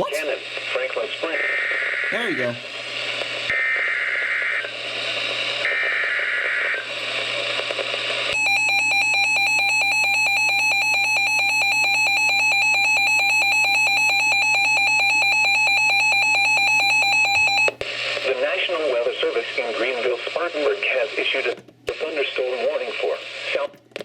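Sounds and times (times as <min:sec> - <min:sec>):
radio static: 0:00.0 - 0:08.4, 0:17.4 - 0:24.0.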